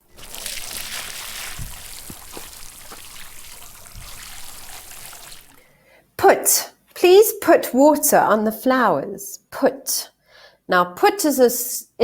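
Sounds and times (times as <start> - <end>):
water drips: 0.0 - 5.7
water pouring and trickling: 0.0 - 5.7.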